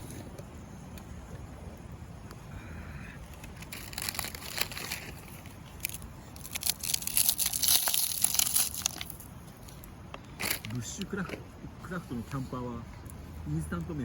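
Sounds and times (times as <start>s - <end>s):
plastic packaging crinkling: 3.4s - 9.8s.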